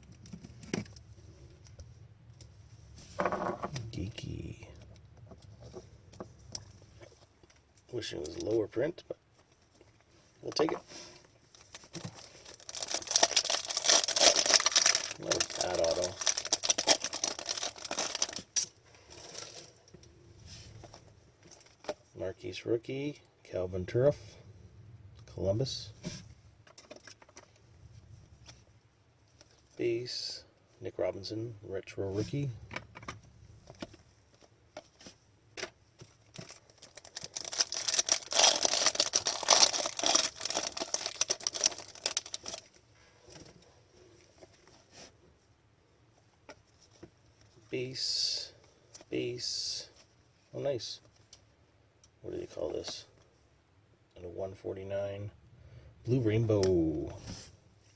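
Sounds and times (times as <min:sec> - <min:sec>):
plastic packaging crinkling: 0:11.5 - 0:19.8, 0:36.2 - 0:42.8.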